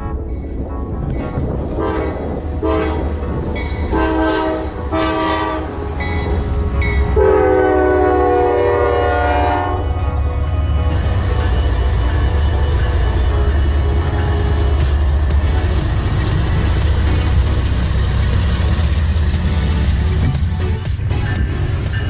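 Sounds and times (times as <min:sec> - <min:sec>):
diesel locomotive horn blasts: 0:00.0 - 0:10.5
low rumble of train: 0:00.0 - 0:22.0.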